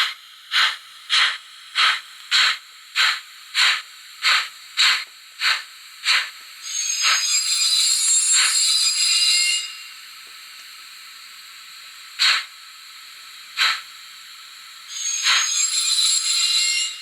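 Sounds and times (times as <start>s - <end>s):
short steam puffs: 0.0s - 7.4s, 12.2s - 12.5s
steam hiss from small speaker: 0.0s - 17.0s.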